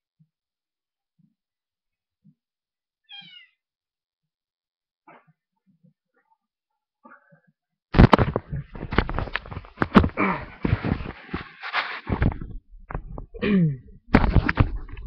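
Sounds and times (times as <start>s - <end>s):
close rustling: 8.0s - 13.0s
knocks on microphone: 14.1s - 15.0s.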